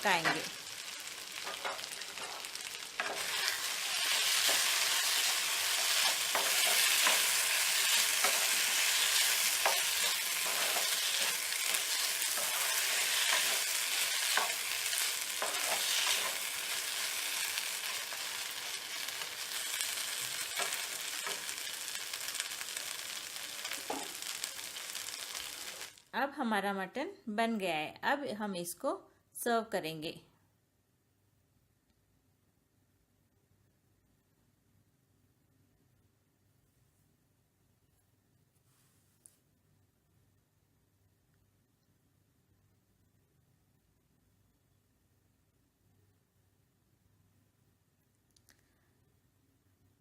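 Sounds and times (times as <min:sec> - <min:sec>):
meat and onions sizzling in oil: 0:00.0 - 0:26.0
spoon scraping pan: 0:01.4 - 0:21.7.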